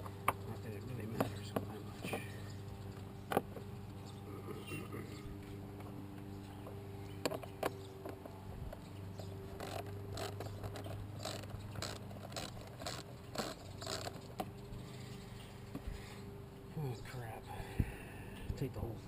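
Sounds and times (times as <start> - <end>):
steady low hum: 0.0 - 19.0
scraping rattling strokes: 9.4 - 15.4.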